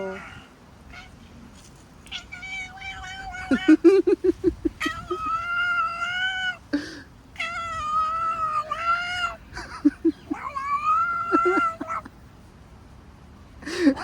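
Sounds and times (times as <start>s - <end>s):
cat chirping: 0.0s - 6.7s, 7.4s - 12.1s
cat meowing: 0.0s - 6.7s, 7.4s - 12.1s.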